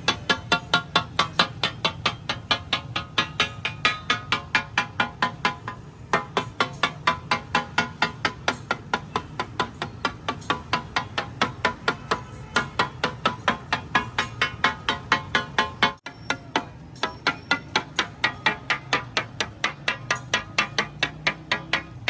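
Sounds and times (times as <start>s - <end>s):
steel spatulas striking griddle: 0.0s - 22.0s.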